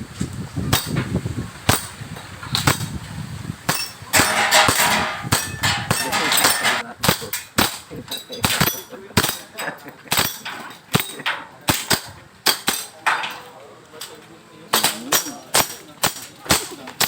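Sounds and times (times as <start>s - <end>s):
airsoft gun shots: 2.5s - 2.9s, 3.7s - 7.8s, 11.7s - 12.9s.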